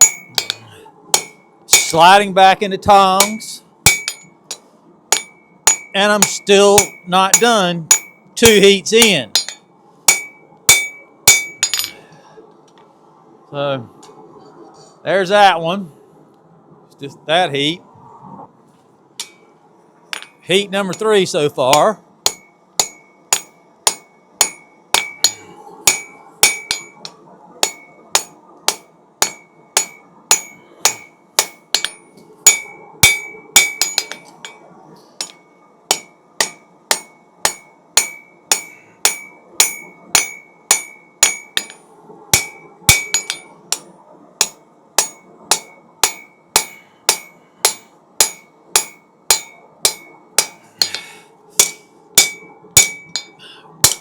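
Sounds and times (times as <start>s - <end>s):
hammer striking steel on anvil: 0.0s - 2.2s, 2.9s - 12.0s, 19.2s - 19.5s, 20.1s - 54.0s.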